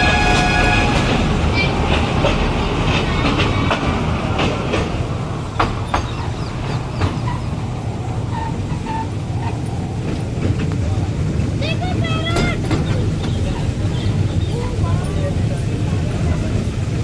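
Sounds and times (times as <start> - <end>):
wheels clicking over rails: 0.0 - 17.0.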